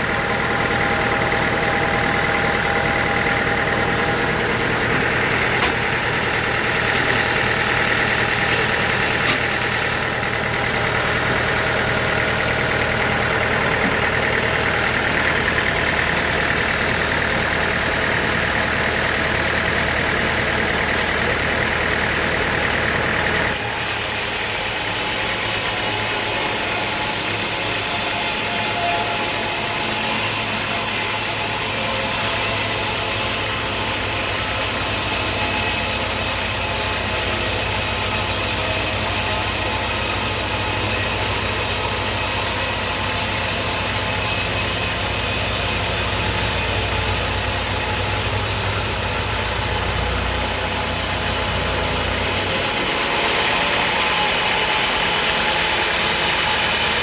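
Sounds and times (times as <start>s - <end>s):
low engine-like hum: 0.0s - 27.4s
sawmill machinery hiss: 0.0s - 57.0s.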